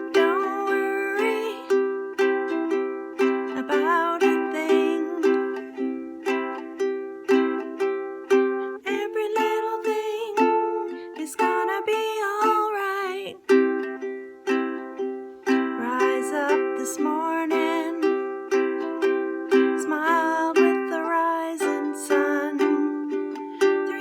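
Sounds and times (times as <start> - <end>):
person singing: 0.0 - 24.0
ukulele strumming: 0.0 - 24.0.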